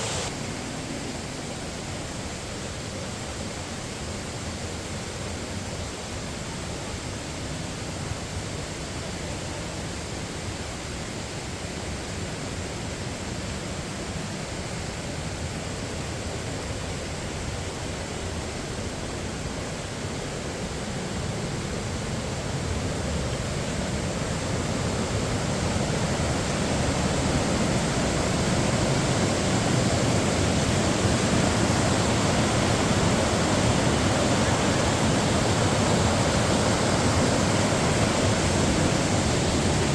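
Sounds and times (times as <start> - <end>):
rush of falling water: 0.0 - 39.9.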